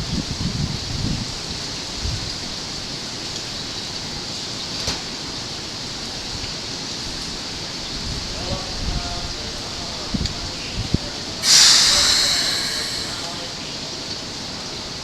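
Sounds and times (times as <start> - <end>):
steady outdoor hiss: 11.4 - 13.7.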